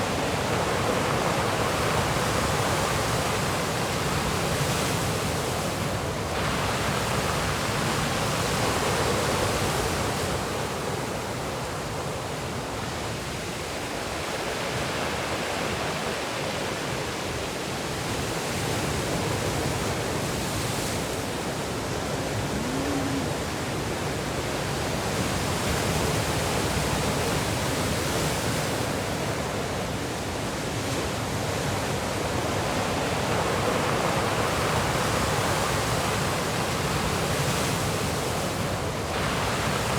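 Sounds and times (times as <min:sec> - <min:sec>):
sea waves breaking: 0:18.5 - 0:39.9.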